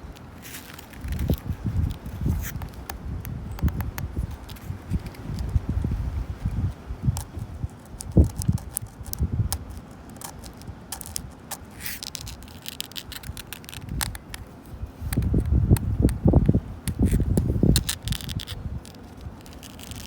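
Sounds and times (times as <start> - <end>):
wind buffeting microphone: 0.0 - 12.4, 13.0 - 20.0
fingernails scratching on wood: 7.2 - 20.0.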